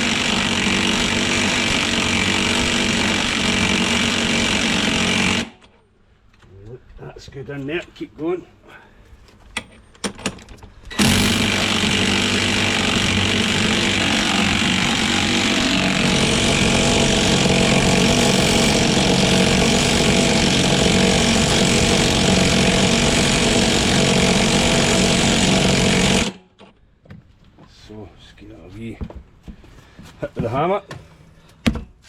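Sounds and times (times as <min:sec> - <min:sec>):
battery-powered tool running: 0:00.0 - 0:05.6, 0:10.9 - 0:26.4.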